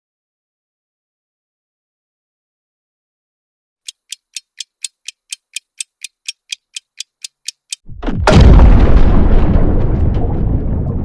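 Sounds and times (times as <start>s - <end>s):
clock ticking: 3.9s - 7.8s
explosion boom rumbling: 7.9s - 11.0s.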